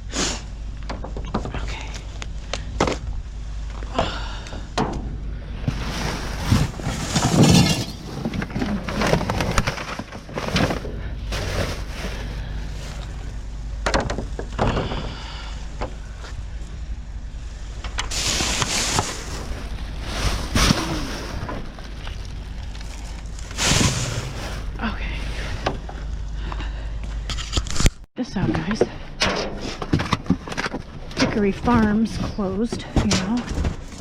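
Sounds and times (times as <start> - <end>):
steady low hum: 0.0 - 34.0
items knocking and clattering: 4.8 - 12.4, 13.8 - 15.1, 27.3 - 34.0
plastic bags rustling: 5.6 - 13.4, 18.0 - 26.2.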